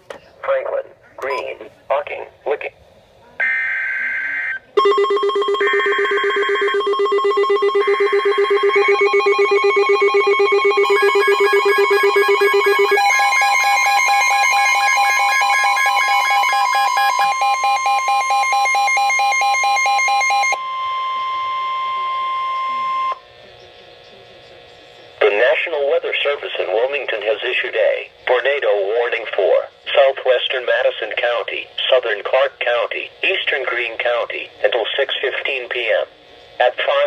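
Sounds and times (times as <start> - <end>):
rapidly pulsing electronic alarm beeps: 3.4 - 23.2
steady warning alarm tone: 3.4 - 23.3
screechy digital header bursts: 7.7 - 19.7.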